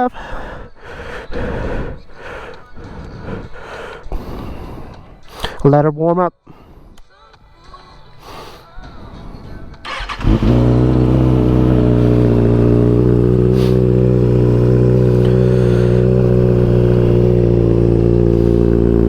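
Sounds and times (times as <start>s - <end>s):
motorcycle engine starting and idling: 9.8s - 19.0s.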